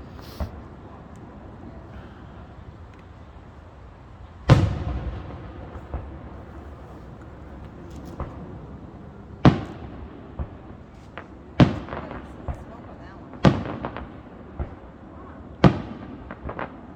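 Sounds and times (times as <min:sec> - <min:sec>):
fireworks booming: 0:00.0 - 0:15.0, 0:15.6 - 0:16.9.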